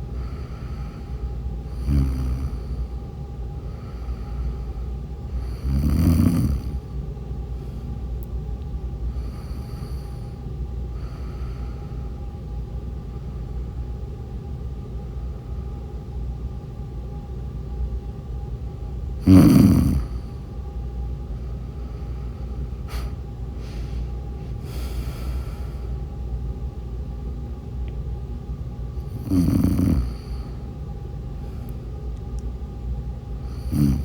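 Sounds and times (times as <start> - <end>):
quiet breaths: 0.0 - 8.3, 8.9 - 12.4, 21.2 - 26.3, 28.9 - 32.5, 33.3 - 34.0
low background hum: 0.0 - 34.0
person snoring: 1.7 - 2.9, 5.4 - 6.8, 9.2 - 10.3, 19.2 - 20.4, 29.0 - 30.6, 33.5 - 34.0.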